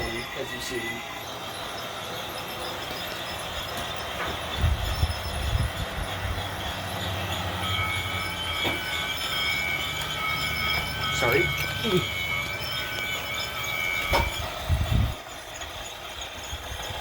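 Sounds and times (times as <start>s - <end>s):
high-pitched squeal: 0.0s - 17.0s
toy train motor hum: 0.0s - 17.0s.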